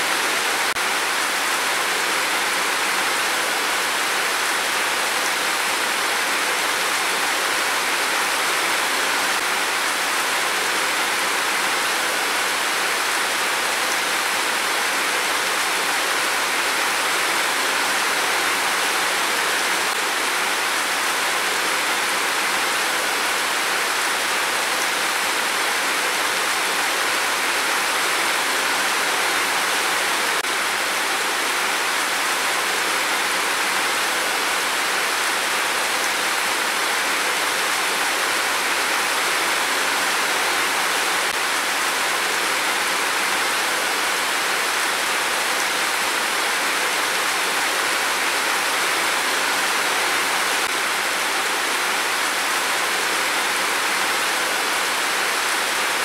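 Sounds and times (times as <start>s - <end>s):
heavy rain pouring: 0.0s - 56.0s.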